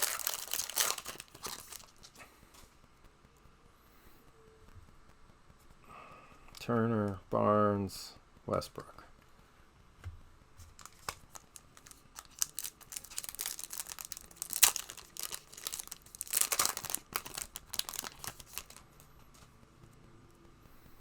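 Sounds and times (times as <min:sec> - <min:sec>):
foil pack tearing and crinkling: 0:00.0 - 0:02.2, 0:10.7 - 0:18.8.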